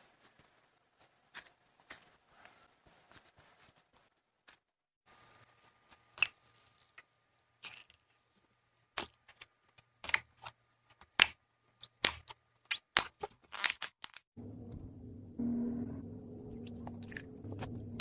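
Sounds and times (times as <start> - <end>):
steady low sound: 14.4 - 18.0.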